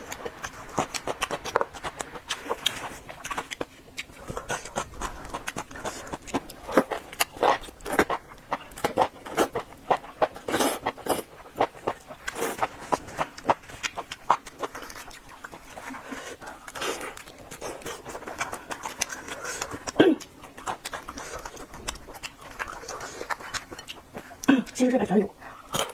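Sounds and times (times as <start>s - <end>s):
wet chewing smacks and crunches: 0.0s - 24.9s.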